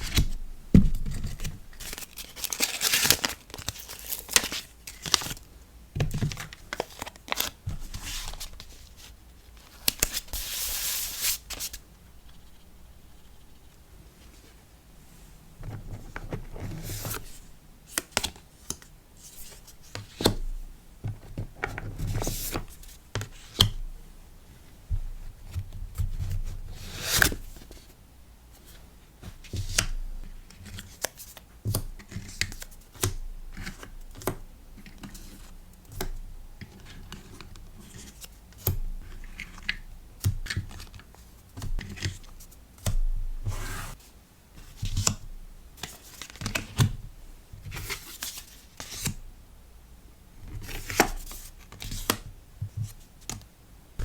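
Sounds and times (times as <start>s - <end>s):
packaging taps and rustles: 0.1s - 5.4s, 6.0s - 8.7s.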